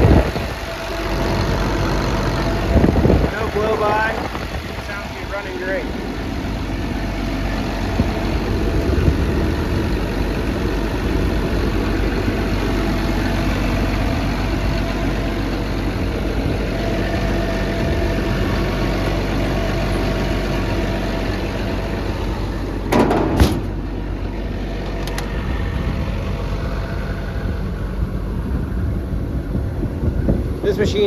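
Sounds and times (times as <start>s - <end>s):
diesel engine idling: 0.0s - 31.0s
loud clatter: 22.8s - 25.5s.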